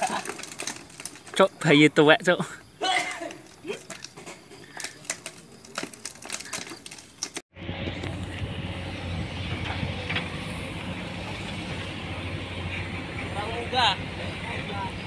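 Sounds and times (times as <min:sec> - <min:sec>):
clicks and crackles: 0:00.0 - 0:01.7, 0:02.9 - 0:07.4
excavator diesel engine running: 0:07.5 - 0:15.0.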